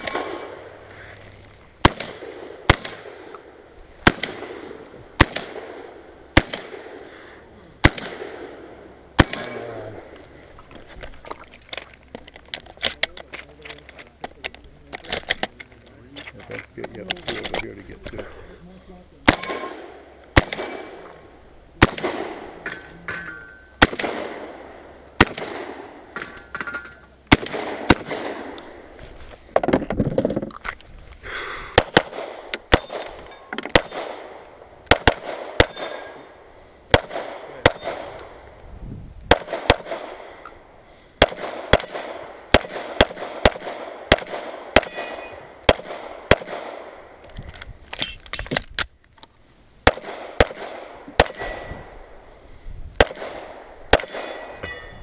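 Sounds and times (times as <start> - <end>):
gunshots: 0.0 - 0.8, 1.8 - 3.4, 4.0 - 7.1, 7.8 - 10.0, 19.2 - 21.1, 21.8 - 23.1, 23.8 - 26.4, 27.3 - 28.8, 31.8 - 38.2, 39.3 - 40.4, 41.2 - 47.2, 49.8 - 52.0, 53.0 - 54.6
ringing of hit steel targets: 21.9 - 23.8, 32.5 - 34.2, 35.6 - 36.3, 37.6 - 38.2, 41.0 - 42.7, 44.8 - 45.7, 51.2 - 52.2, 53.9 - 55.0.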